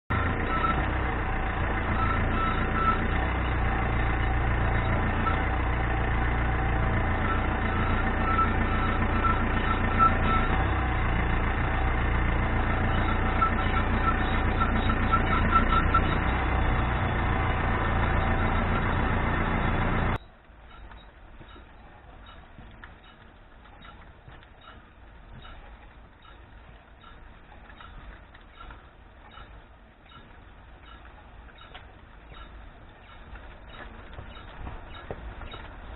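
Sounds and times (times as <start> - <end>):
high rhythmic squeak: 0.1 - 11.5, 12.4 - 35.9
car drivetrain hum: 0.1 - 35.9.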